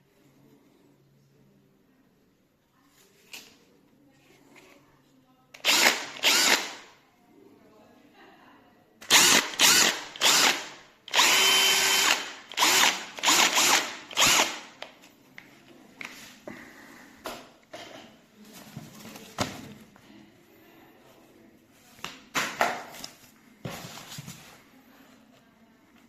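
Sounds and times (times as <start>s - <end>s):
cordless drill motor whirring: 5.6s - 6.8s, 9.1s - 14.7s
faint drill clicks: 5.6s - 6.8s, 9.0s - 14.7s.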